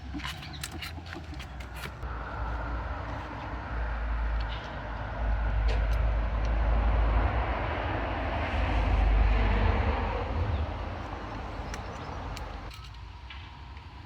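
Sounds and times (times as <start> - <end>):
passing vehicle engine and road noise: 0.0 - 14.0.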